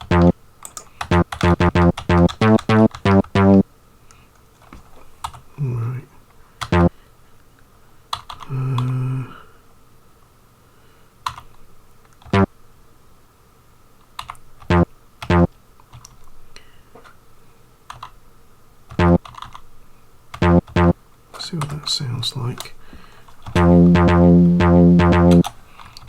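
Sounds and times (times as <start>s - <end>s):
synth bass notes: 0.0s - 0.3s, 1.1s - 3.6s, 6.7s - 6.9s, 14.7s - 15.5s, 19.0s - 19.2s, 20.4s - 21.0s, 23.6s - 25.5s
computer keyboard clicks: 11.2s - 11.5s, 17.9s - 18.2s, 19.2s - 19.6s.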